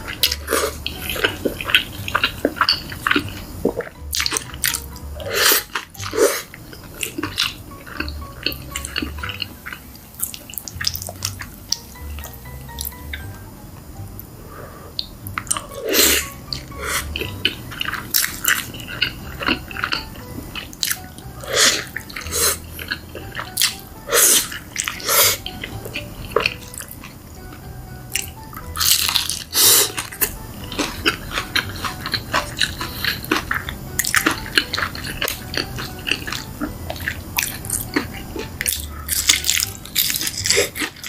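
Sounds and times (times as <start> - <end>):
wet chewing and mouth smacks: 17.4 - 21.0, 28.1 - 41.0.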